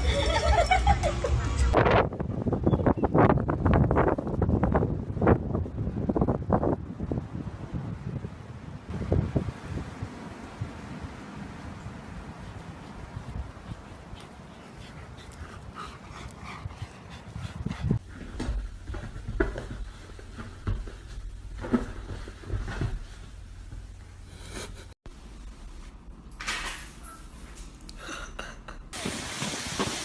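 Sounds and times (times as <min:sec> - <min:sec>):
dog panting: 0:12.5 - 0:18.5.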